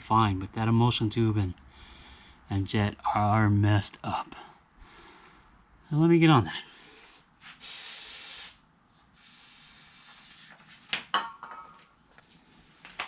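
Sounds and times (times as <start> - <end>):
soft rubbing hiss: 6.6 - 11.1, 11.8 - 13.0
aerosol spray burst: 7.6 - 8.6.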